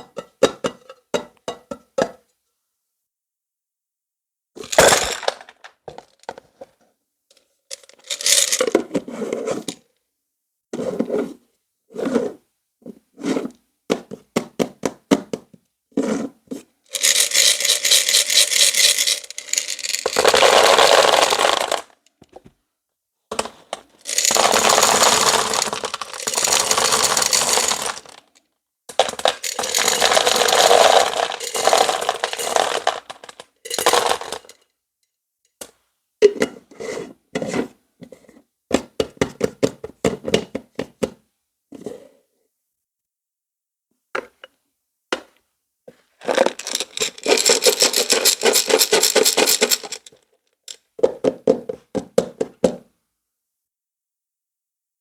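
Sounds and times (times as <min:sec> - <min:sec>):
crackling and scraping: 0:23.3 - 0:28.3, 0:46.1 - 0:50.2.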